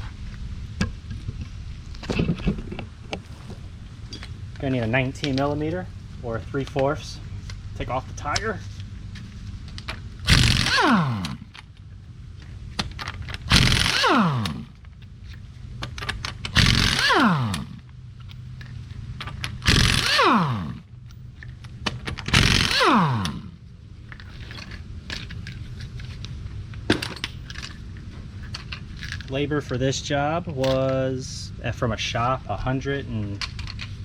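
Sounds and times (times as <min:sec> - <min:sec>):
loose nuts clicking and rattling: 0:08.2 - 0:29.4, 0:33.3 - 0:34.0
impact wrench bursts: 0:10.2 - 0:11.7, 0:13.4 - 0:14.8, 0:16.3 - 0:17.9, 0:19.3 - 0:20.9, 0:22.1 - 0:23.6.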